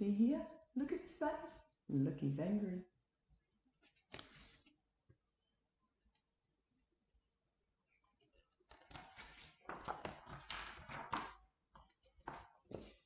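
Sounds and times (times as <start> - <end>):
paper rustling: 3.8 - 4.8, 8.1 - 13.0.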